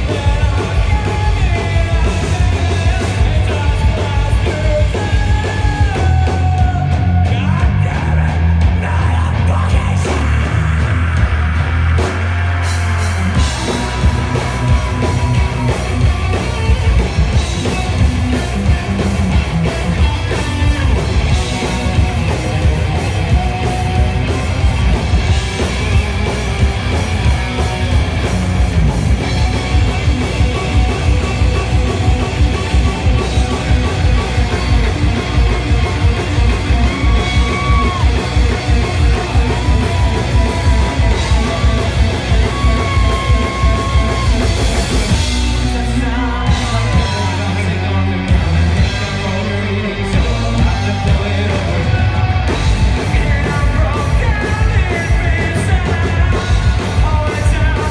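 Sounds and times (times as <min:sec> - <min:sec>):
distorted electric guitar: 0:00.0 - 0:57.9
fast driving drums: 0:00.0 - 0:57.9
person yelling vocals: 0:36.8 - 0:38.3, 0:39.8 - 0:44.6.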